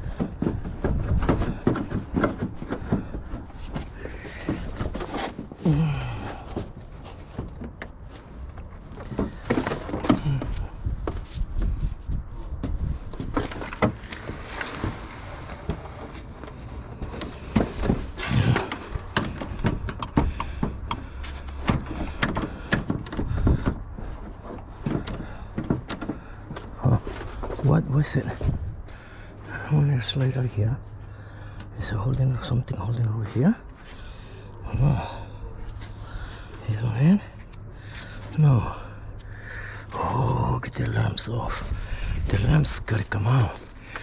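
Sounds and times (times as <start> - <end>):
car parts knocking and rattling: 0.0 - 32.0
steady low rumble: 0.0 - 44.0.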